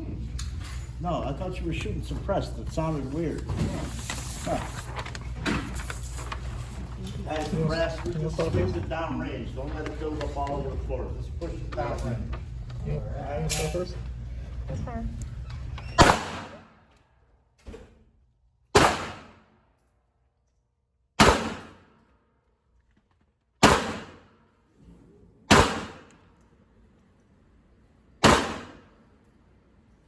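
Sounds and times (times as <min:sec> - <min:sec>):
faint distant gunshot: 0:16.0 - 0:16.7, 0:18.8 - 0:19.4, 0:21.2 - 0:21.8, 0:23.6 - 0:24.2, 0:25.5 - 0:26.1, 0:28.2 - 0:28.8
loud gunshots with echo: 0:16.0 - 0:16.8, 0:18.7 - 0:19.5, 0:21.2 - 0:21.9, 0:23.6 - 0:24.3, 0:25.5 - 0:26.1, 0:28.2 - 0:29.0.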